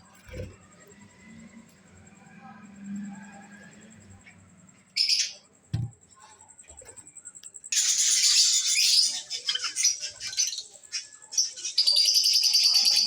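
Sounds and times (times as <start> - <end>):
caged birds chirping: 3.6 - 13.0
low thump: 5.7 - 6.0.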